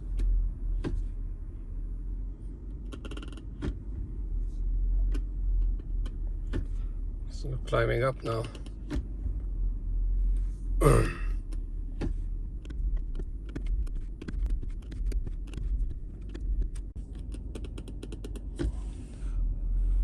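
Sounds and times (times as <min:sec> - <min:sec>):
engine idling: 0:00.0 - 0:20.0
rapid light clicks: 0:12.6 - 0:18.6.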